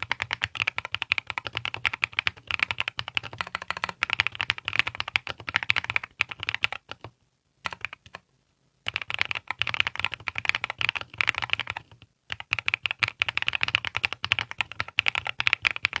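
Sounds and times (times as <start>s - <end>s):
mechanical keyboard typing: 0.0s - 8.2s, 8.9s - 16.0s.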